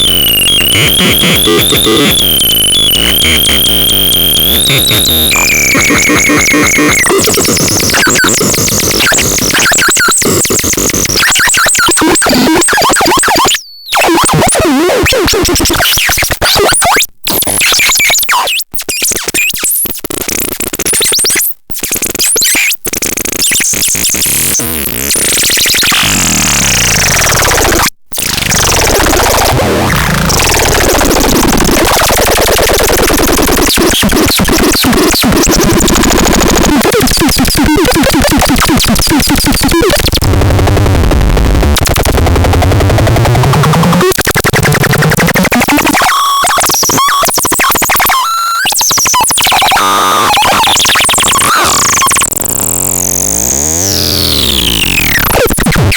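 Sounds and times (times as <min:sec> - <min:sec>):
falling synthesizer sweep: 0:00.0 - 0:08.2
harsh distorted synthesizer noise: 0:00.0 - 0:16.6, 0:23.0 - 0:55.9.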